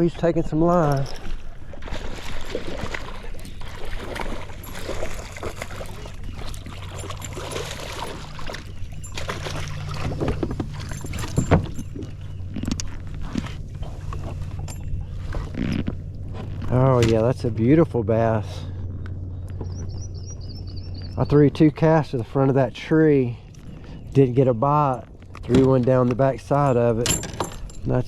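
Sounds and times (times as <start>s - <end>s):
low motor hum: 0.0s - 28.0s
water splashing: 0.8s - 16.8s.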